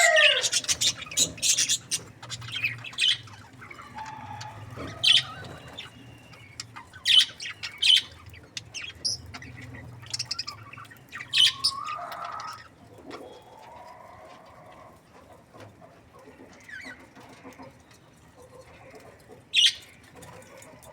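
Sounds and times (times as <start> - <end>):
budgies chirping and chattering: 0.0 - 13.7, 18.6 - 20.5.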